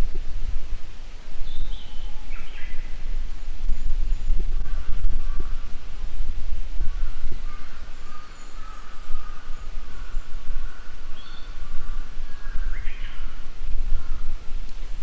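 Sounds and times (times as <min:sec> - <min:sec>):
wind rumble on microphone: 0:00.0 - 0:15.0
bird singing whistled song: 0:01.4 - 0:02.9, 0:11.2 - 0:11.6.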